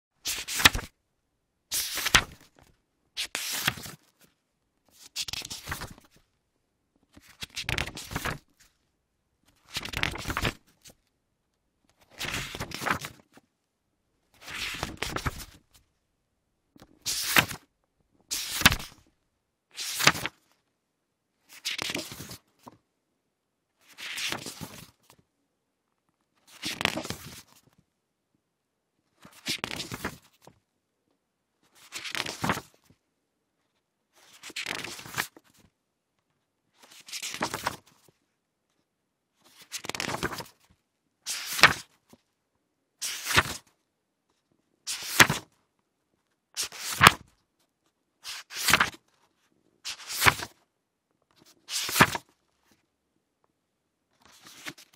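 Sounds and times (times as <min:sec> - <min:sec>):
book pages turning: 0:00.3 - 0:00.9, 0:01.7 - 0:04.2, 0:05.0 - 0:06.2, 0:07.1 - 0:08.7, 0:09.5 - 0:11.0, 0:11.9 - 0:13.4, 0:14.4 - 0:15.7, 0:16.8 - 0:17.6, 0:18.3 - 0:19.0, 0:19.8 - 0:20.4, 0:21.5 - 0:22.8, 0:23.9 - 0:25.2, 0:26.5 - 0:27.7, 0:29.2 - 0:30.5, 0:31.8 - 0:32.7, 0:34.2 - 0:35.7, 0:36.8 - 0:38.1, 0:39.4 - 0:40.7, 0:41.3 - 0:42.0, 0:43.0 - 0:43.7, 0:44.9 - 0:45.5, 0:46.6 - 0:47.2, 0:48.2 - 0:49.2, 0:49.9 - 0:50.6, 0:51.4 - 0:52.3, 0:54.2 - 0:54.9.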